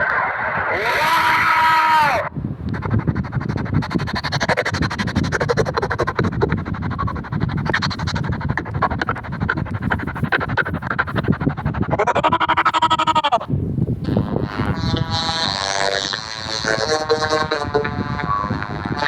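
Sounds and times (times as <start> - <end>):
scratchy rubbing rasp: 2.7 - 19.0.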